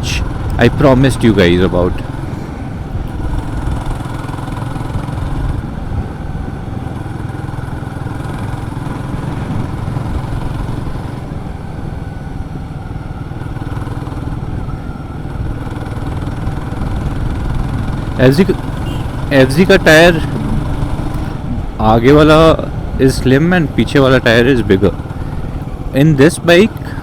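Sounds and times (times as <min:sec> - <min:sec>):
motorcycle engine droning: 0:00.0 - 0:27.0.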